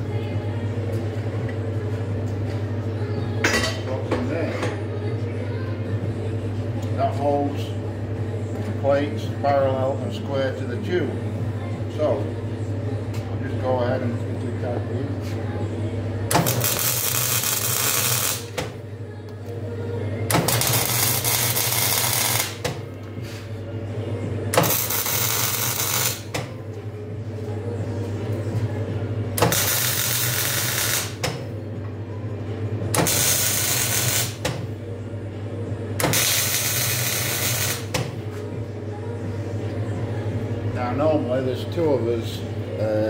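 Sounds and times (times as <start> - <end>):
steady low hum: 0.0 - 43.0
welding arc crackling: 16.3 - 18.6, 20.3 - 22.7, 24.6 - 26.3, 29.4 - 31.3, 33.0 - 34.5, 36.0 - 38.0.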